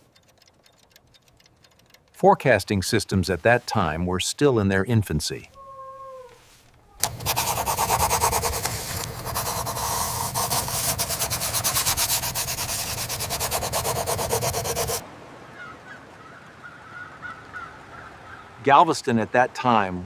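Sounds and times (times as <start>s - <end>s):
rapid rasping clatter: 0.0s - 2.2s, 7.0s - 15.0s.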